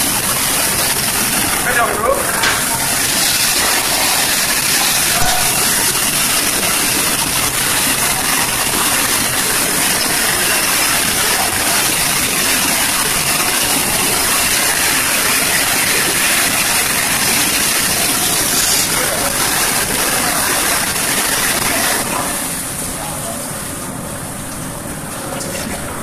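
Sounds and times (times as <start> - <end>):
dishwasher water spraying: 0.0 - 24.0.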